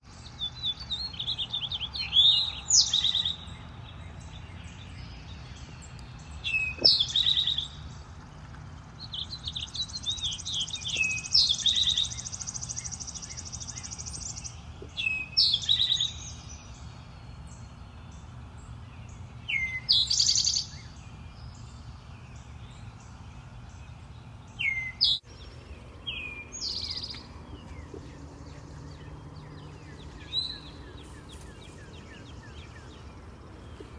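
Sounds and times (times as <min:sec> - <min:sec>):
finches singing: 0:00.0 - 0:33.9
low background rumble: 0:25.3 - 0:33.9.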